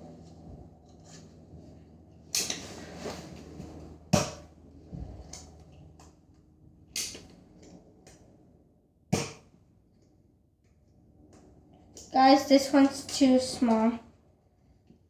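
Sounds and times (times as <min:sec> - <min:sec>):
toy blaster snaps: 0:07.0 - 0:07.2.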